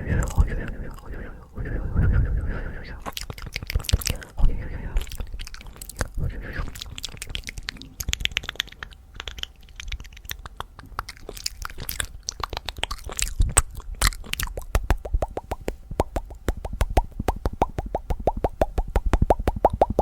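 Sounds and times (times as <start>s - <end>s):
wet tongue clicks: 0.0s - 1.6s, 2.2s - 20.0s
lip smacks: 0.0s - 20.0s.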